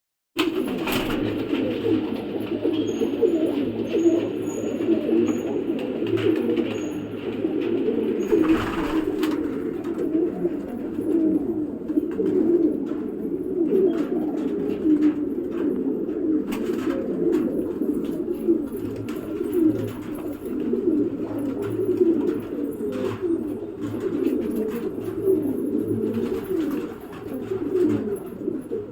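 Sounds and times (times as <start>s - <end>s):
pigeons cooing: 0.4s - 28.9s.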